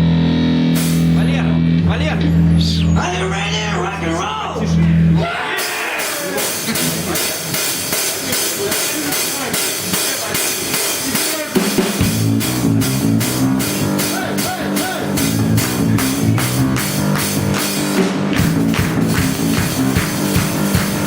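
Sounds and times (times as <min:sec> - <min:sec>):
live rock band: 0:00.0 - 0:02.6, 0:05.0 - 0:21.0
bass line: 0:00.0 - 0:08.4, 0:11.6 - 0:21.0
drum kit beat with cymbals: 0:00.7 - 0:01.2, 0:05.3 - 0:21.0.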